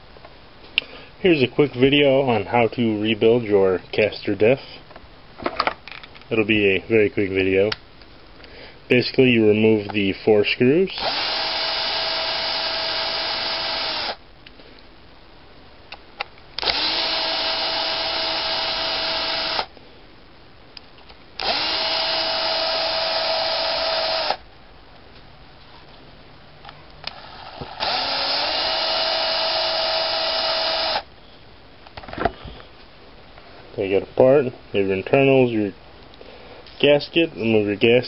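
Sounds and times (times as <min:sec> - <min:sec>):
electric drill-driver running: 0:11.0 - 0:14.2, 0:16.6 - 0:19.7, 0:21.4 - 0:24.4, 0:27.1 - 0:31.1.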